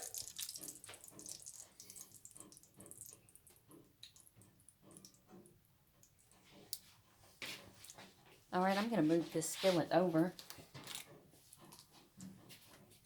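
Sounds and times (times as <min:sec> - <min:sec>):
frying oil crackling and popping: 0:00.0 - 0:05.4.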